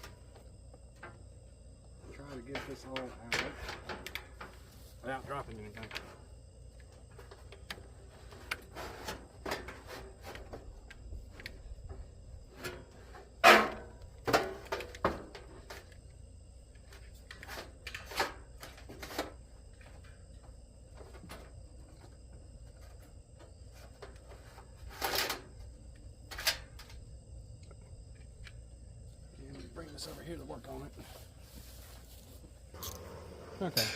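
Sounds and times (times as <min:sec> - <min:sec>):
sheet-metal knocks and clunks: 0:11.8 - 0:15.8.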